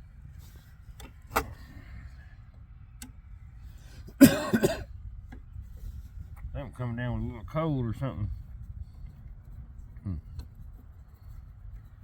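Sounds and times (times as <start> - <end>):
person coughing: 4.2 - 4.9.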